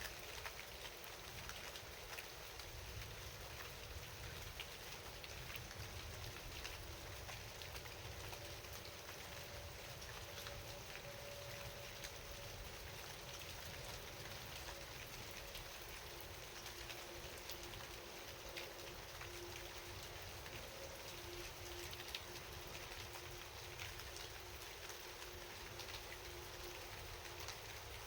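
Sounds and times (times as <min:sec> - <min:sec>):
raindrops ticking: 0:00.0 - 0:28.0
steady rain: 0:00.0 - 0:28.0.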